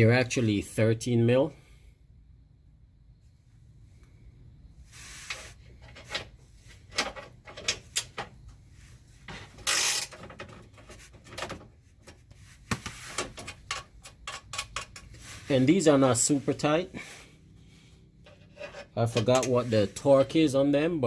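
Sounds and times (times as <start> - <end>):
metal scrape: 15.0 - 17.2, 18.2 - 20.3.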